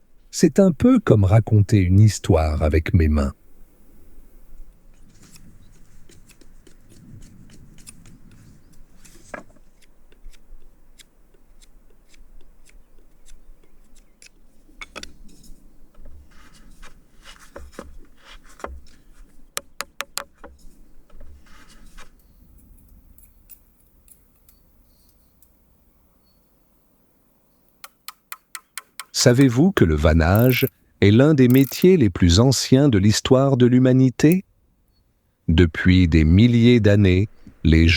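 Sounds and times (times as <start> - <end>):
sharp clicks: 30.2 - 30.7, 31.4 - 32.0
sticks being snipped and scraped: 30.4 - 30.7, 31.5 - 31.9.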